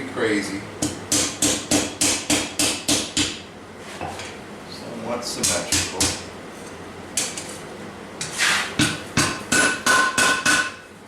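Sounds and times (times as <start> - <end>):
hammer striking steel on anvil: 8.8 - 10.8.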